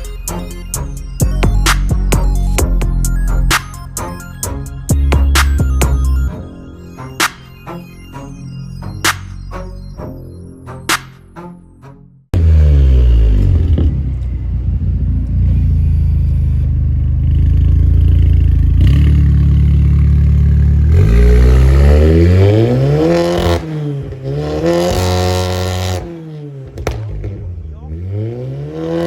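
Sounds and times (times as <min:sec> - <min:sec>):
car engine revving hard: 0:12.4 - 0:14.1, 0:18.7 - 0:29.0.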